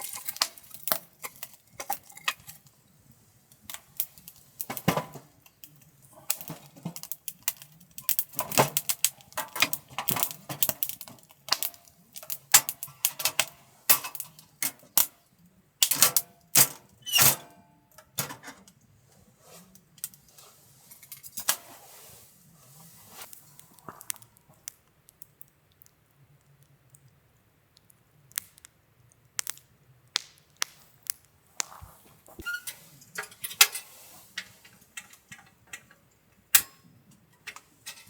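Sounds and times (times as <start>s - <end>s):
metal camp gear clinking: 32.4s - 36.0s.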